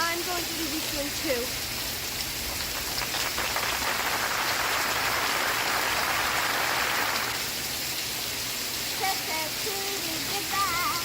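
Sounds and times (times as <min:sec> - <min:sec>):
steady rain falling: 0:00.0 - 0:11.0.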